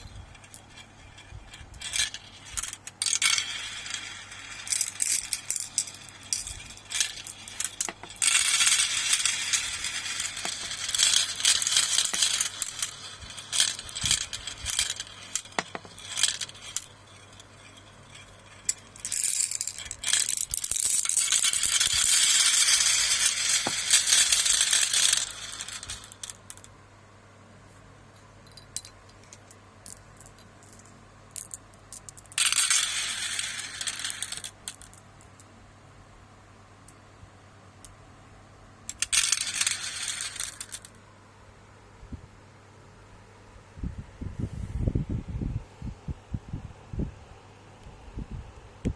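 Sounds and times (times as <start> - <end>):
marbles clattering down a track: 0.0 - 26.7, 28.6 - 35.3, 38.9 - 41.0.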